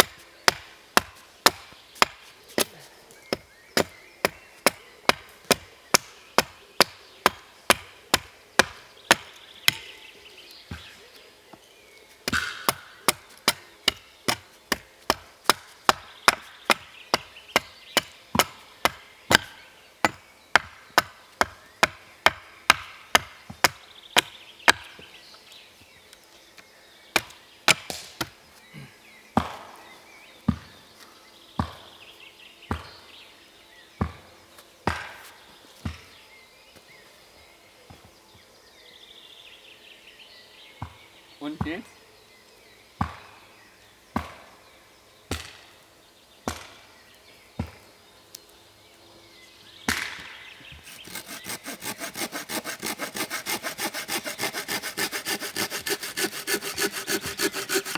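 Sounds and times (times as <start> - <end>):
wood being chopped: 0.0 - 10.0, 12.2 - 25.1, 27.2 - 28.4, 29.4 - 29.8, 34.8 - 35.3, 45.3 - 45.6, 46.4 - 46.9, 49.9 - 57.9.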